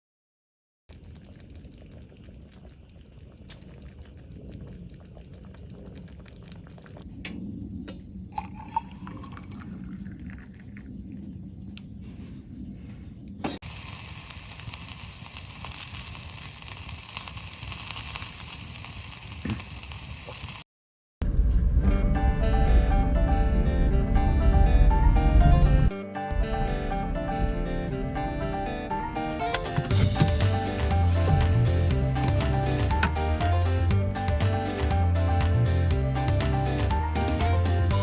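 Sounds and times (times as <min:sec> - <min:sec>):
liquid simmering in a pot: 0:00.9 - 0:07.3.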